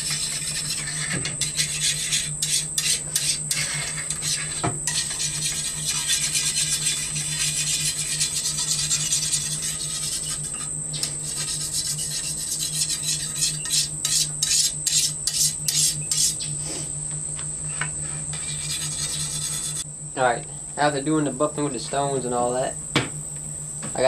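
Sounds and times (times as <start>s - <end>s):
sharpening stone rasping on blade: 0.0s - 16.5s, 18.1s - 19.8s
high insect buzz: 0.0s - 21.1s.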